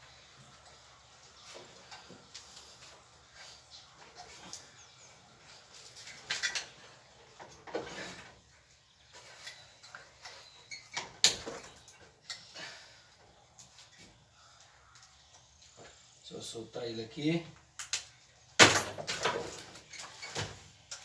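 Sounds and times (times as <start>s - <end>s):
metal parts scraping and rattling: 5.4s - 8.4s, 18.6s - 21.0s.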